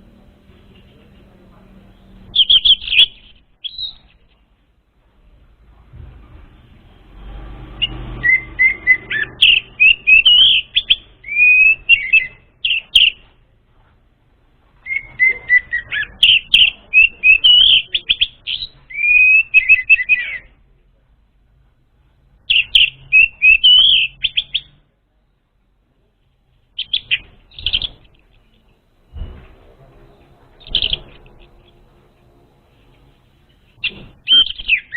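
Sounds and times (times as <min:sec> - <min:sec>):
thrush singing whistled phrases: 0:07.8 - 0:13.1, 0:14.9 - 0:20.5, 0:22.5 - 0:24.7.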